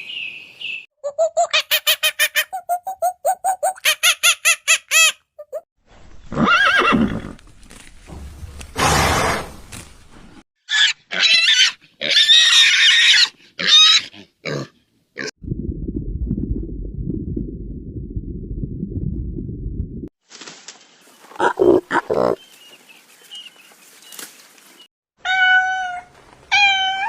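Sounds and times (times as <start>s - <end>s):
pig squealing: 10.7s - 15.3s.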